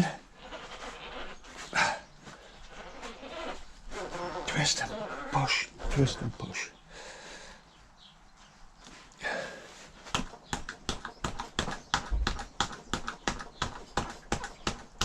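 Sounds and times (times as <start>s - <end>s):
rapid even knocking: 10.1s - 15.0s.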